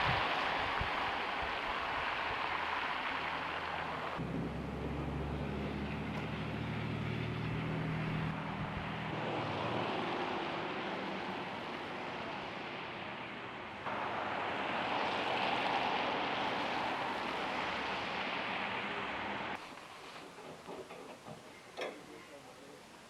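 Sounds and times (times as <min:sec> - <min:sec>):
wind hissing: 0:00.0 - 0:04.7, 0:06.8 - 0:23.0
vehicle engine humming: 0:00.0 - 0:23.0.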